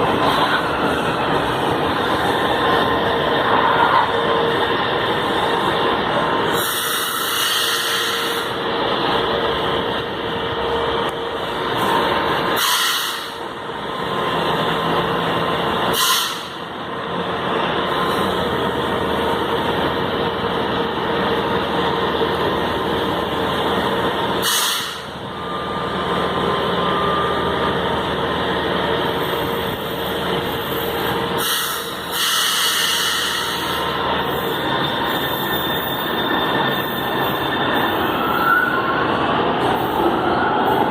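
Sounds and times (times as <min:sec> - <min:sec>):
metro train machinery running: 0:00.0 - 0:40.9
air brake hisses: 0:06.5 - 0:08.5, 0:12.6 - 0:13.4, 0:15.9 - 0:16.6, 0:24.4 - 0:25.1, 0:31.4 - 0:33.8.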